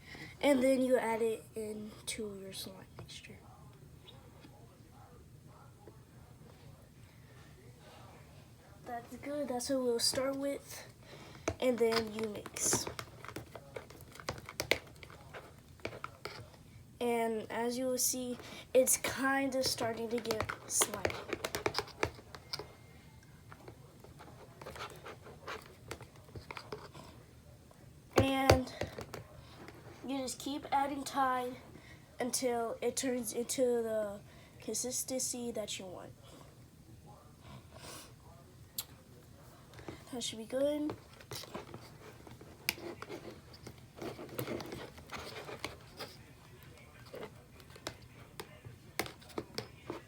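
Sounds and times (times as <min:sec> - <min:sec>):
utensil stirring sticky slime: 0:09.0 - 0:22.9.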